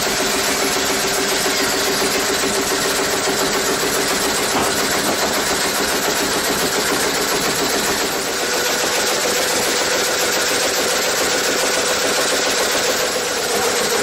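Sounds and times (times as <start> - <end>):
sawmill machinery whirring: 0.0 - 14.0.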